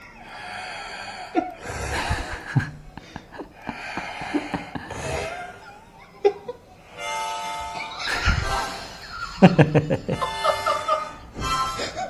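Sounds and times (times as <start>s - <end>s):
person snoring: 0.3s - 2.6s, 3.6s - 5.7s.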